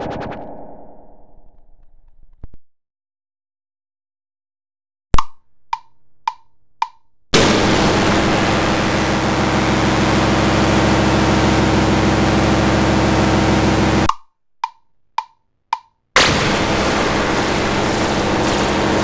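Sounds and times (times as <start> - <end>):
harsh electronic hissing roar: 7.4 - 14.1, 16.2 - 19.0
low hum tones: 7.4 - 14.1, 16.2 - 19.0.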